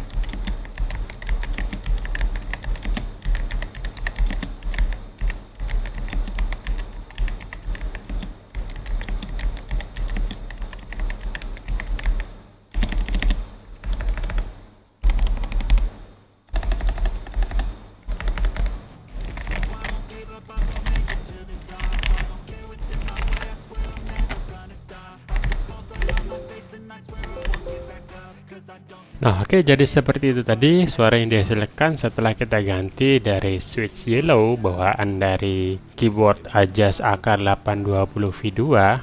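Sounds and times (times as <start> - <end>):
mechanical keyboard typing: 0.0 - 15.9, 16.5 - 24.6, 25.3 - 28.1.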